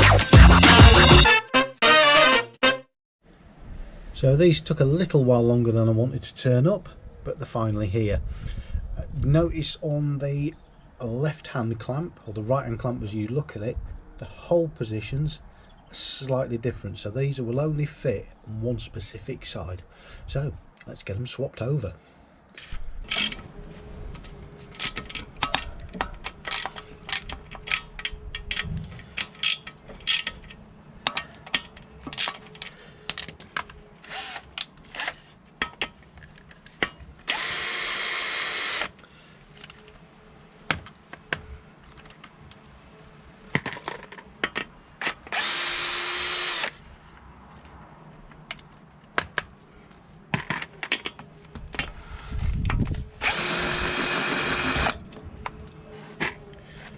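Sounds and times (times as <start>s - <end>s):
power drill running: 34.1s - 35.2s, 37.3s - 39.0s, 45.3s - 46.8s, 53.2s - 55.0s.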